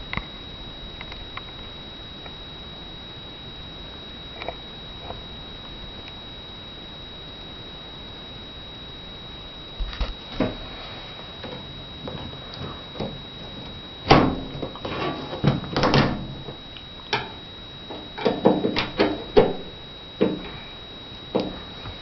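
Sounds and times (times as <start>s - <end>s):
objects knocking and clunking: 17.9s - 19.6s, 20.2s - 20.6s.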